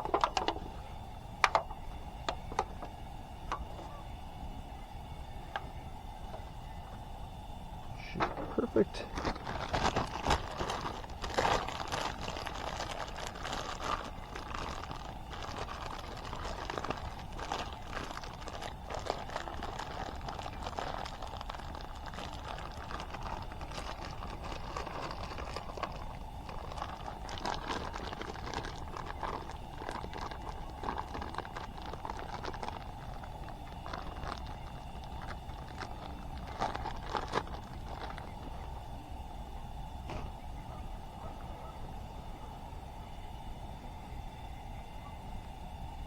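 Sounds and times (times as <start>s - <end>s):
campfire crackling and popping: 9.2s - 38.8s.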